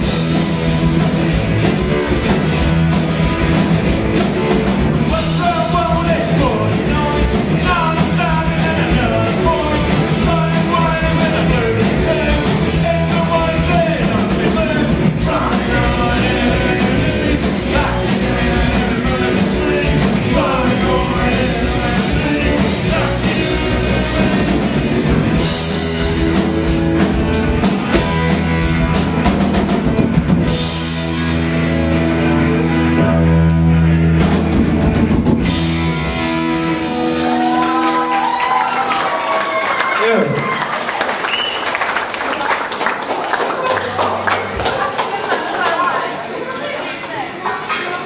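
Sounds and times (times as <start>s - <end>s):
distorted guitars: 0.0s - 38.1s
loud drum kit: 0.0s - 40.4s
live rock band playing: 0.0s - 42.4s
person singing: 5.1s - 25.0s.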